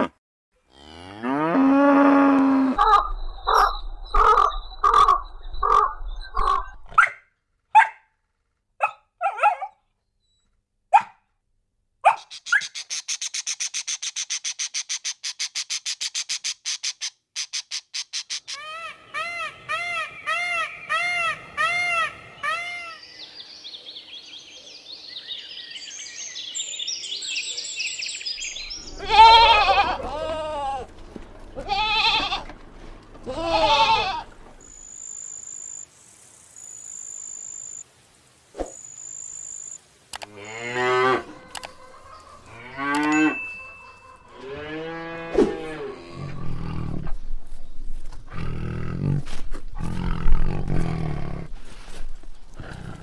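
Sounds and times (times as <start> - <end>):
animal calls: 2.4 - 7.1
livestock bleating: 28.9 - 31.0, 31.6 - 32.6, 33.2 - 34.3.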